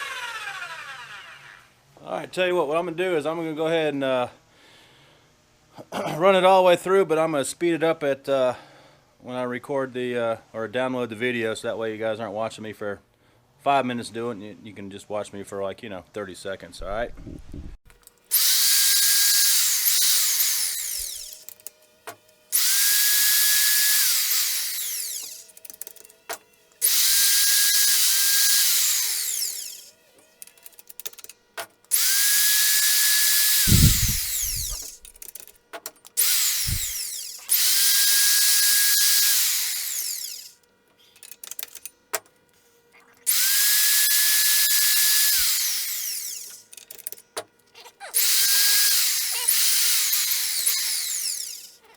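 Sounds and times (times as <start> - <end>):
motor whining: 0.0 - 1.8, 18.3 - 30.8, 31.9 - 35.3, 36.2 - 40.6, 43.3 - 47.1, 48.1 - 51.9.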